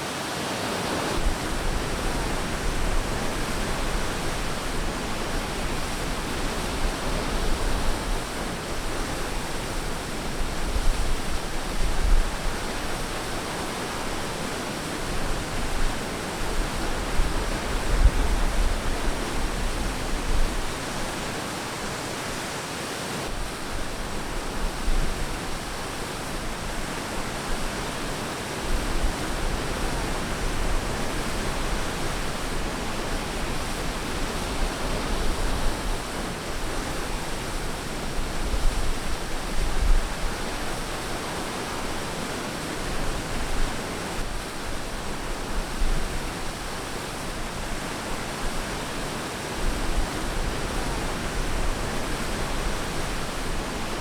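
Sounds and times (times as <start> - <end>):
ocean surf washing onto beach: 0.0 - 54.0.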